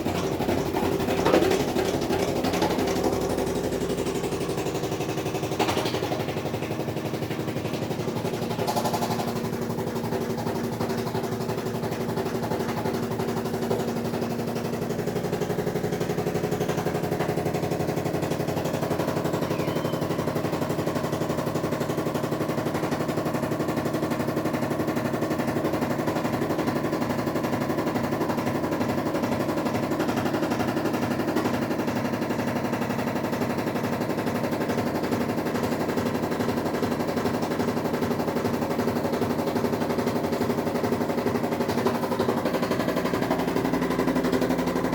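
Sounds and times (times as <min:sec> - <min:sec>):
washing machine draining: 0:00.0 - 0:44.9.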